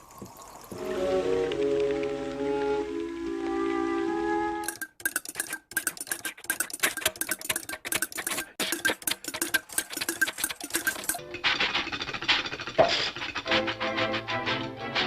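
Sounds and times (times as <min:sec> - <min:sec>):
sustained music notes: 0:00.8 - 0:04.7, 0:13.4 - 0:15.0
rapid clicking and tapping: 0:04.6 - 0:13.8.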